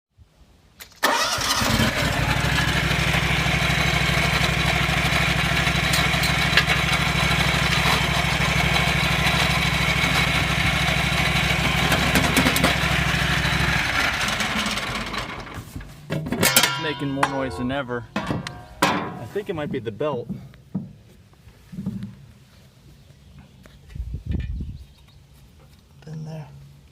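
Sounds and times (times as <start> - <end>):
mower engine running: 1.0 - 16.0.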